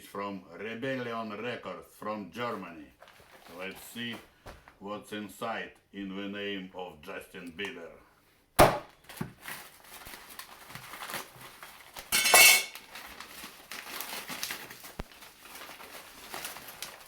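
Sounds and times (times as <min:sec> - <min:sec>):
parcel handling noises: 0:02.9 - 0:04.8, 0:09.0 - 0:17.0.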